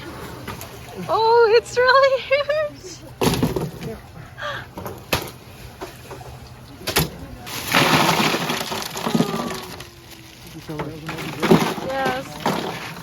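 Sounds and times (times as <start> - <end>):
water splashing: 5.2 - 13.0.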